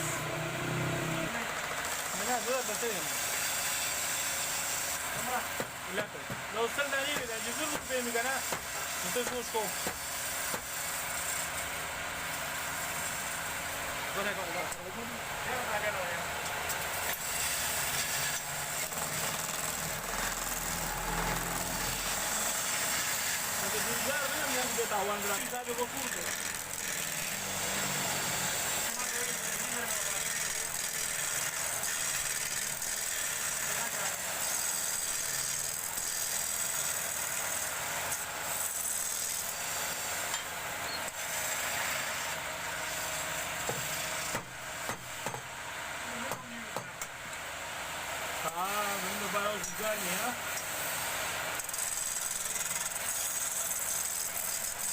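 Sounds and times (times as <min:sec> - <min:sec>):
wood lathe motor hum: 0:16.9 - 0:40.3.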